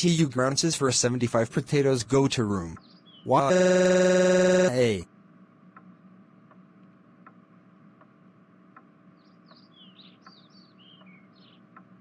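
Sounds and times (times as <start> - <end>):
bird chirping: 2.8 - 3.3, 9.2 - 11.7
soft ticks: 8.0 - 10.4, 11.0 - 12.0.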